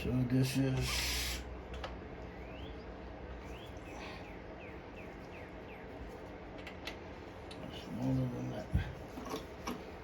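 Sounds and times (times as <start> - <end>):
low steady hum: 0.0 - 10.0
small bird chirping: 2.2 - 6.3.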